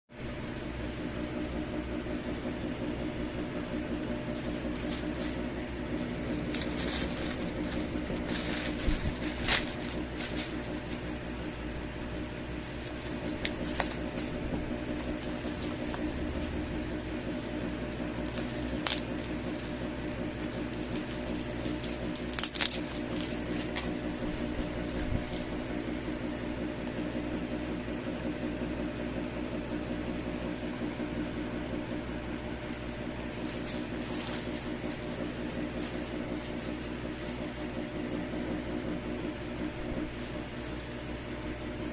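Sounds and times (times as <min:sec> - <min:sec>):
low mechanical hum: 0:00.1 - 0:41.9
packaging clicks and rustles: 0:04.3 - 0:11.6, 0:12.6 - 0:25.9, 0:32.6 - 0:37.9.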